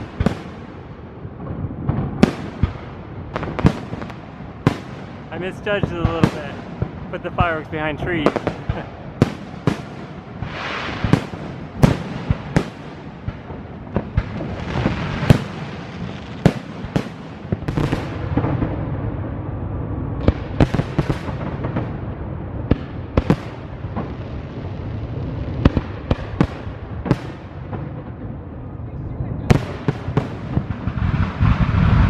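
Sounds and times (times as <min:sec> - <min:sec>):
fireworks crackling hiss: 0:00.0 - 0:18.8, 0:29.5 - 0:32.0
fireworks bangs: 0:00.0 - 0:32.0.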